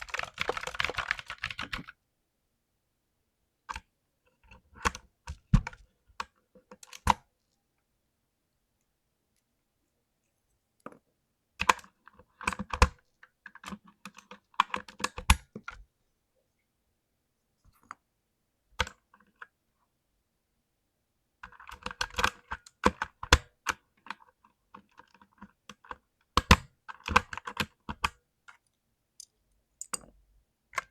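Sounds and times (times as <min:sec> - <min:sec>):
mechanical keyboard keys clicking: 0:00.0 - 0:01.9
mechanical keyboard typing: 0:00.0 - 0:02.0, 0:21.5 - 0:23.4.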